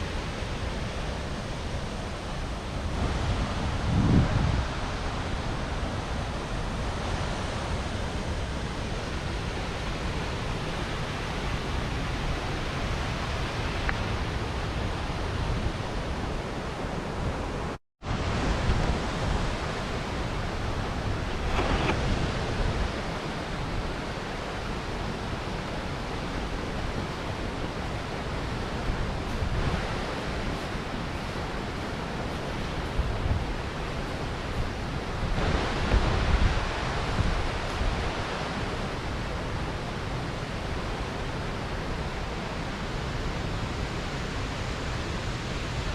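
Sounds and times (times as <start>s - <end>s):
water rushing over weir: 0.0s - 45.9s.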